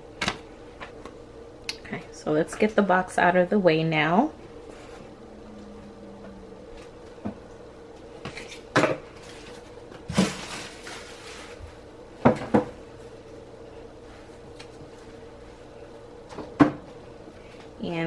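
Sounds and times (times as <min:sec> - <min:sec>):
packaging rustle: 0:09.2 - 0:11.8.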